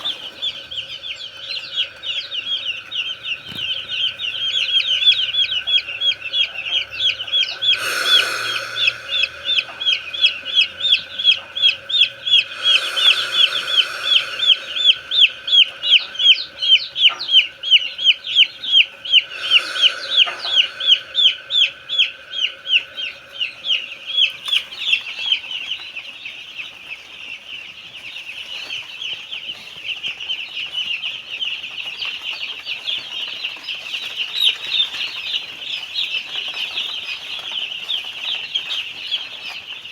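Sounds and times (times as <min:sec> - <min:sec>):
chicks peeping: 0:00.0 - 0:25.2
hissing bursts: 0:07.3 - 0:17.8, 0:19.0 - 0:24.4.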